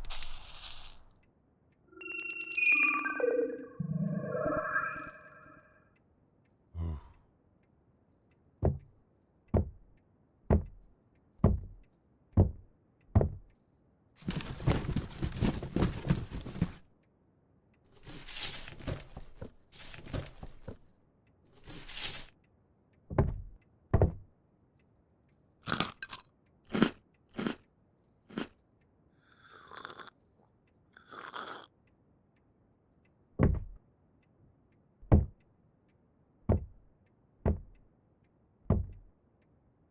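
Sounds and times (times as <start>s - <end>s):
dense crunching: 0.0s - 1.1s, 18.0s - 20.8s, 21.6s - 22.3s
dull thumps: 8.6s - 8.9s, 10.5s - 11.8s, 12.4s - 12.6s, 13.2s - 13.4s, 23.1s - 24.3s, 33.4s - 33.8s, 35.0s - 35.4s, 36.5s - 36.8s, 37.4s - 37.8s, 38.7s - 39.1s
rustling bursts: 14.2s - 16.8s.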